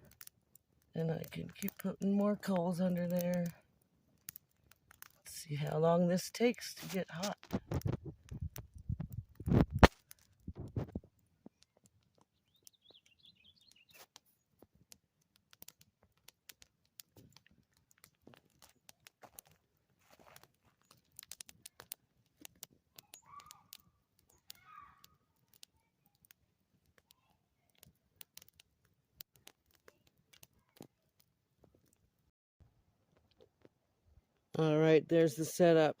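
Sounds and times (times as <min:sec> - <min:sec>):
campfire coals crackling: 0:00.0 - 0:36.0
bird chirping faintly: 0:11.5 - 0:14.4.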